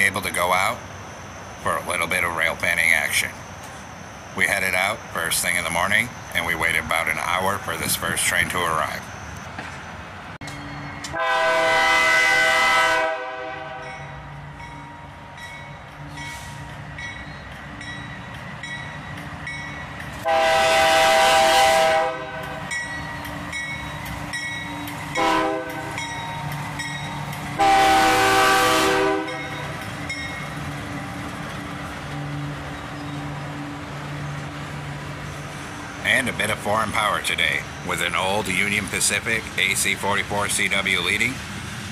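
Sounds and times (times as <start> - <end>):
diesel engines droning: 0.0 - 41.9
locomotive air horn blasts: 11.1 - 14.0, 20.2 - 22.6, 25.1 - 26.1, 27.6 - 29.8.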